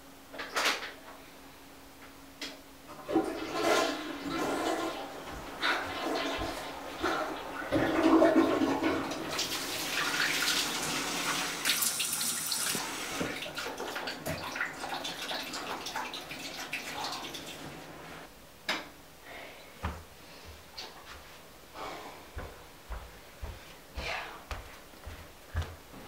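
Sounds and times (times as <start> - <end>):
water running: 2.9 - 18.3.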